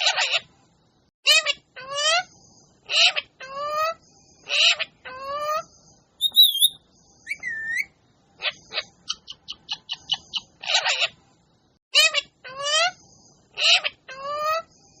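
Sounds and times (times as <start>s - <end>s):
parrot screeching and calling: 6.2s - 7.9s.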